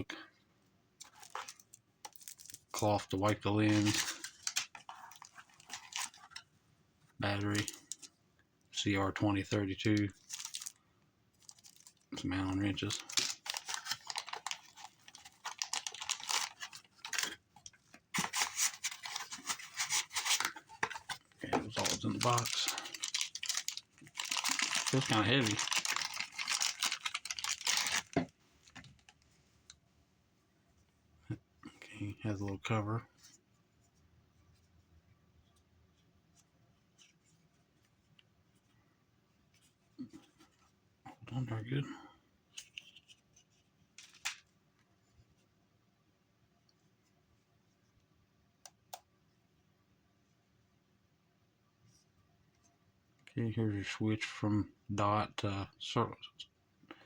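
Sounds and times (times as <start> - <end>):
packaging crinkling and rustling: 1.0 - 6.5, 10.1 - 10.8, 11.4 - 29.2
small ticks and rubs of handling: 33.2 - 38.8, 42.5 - 44.4.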